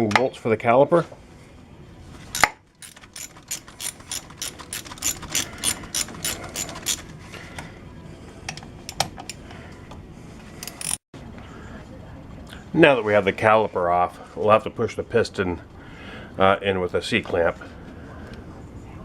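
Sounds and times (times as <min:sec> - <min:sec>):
socket ratchet clicking: 0:02.4 - 0:07.1, 0:10.6 - 0:11.0.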